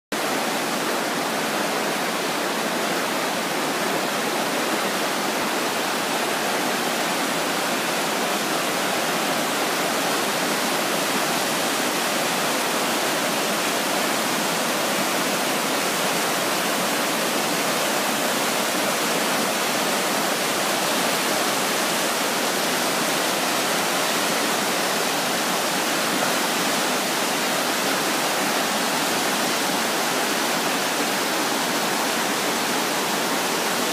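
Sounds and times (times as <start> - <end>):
river rushing: 0.1 - 33.9.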